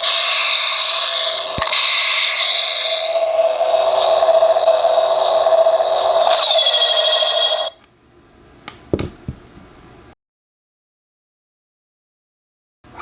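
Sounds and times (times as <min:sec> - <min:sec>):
lightsaber electronic hum: 0:00.0 - 0:07.8.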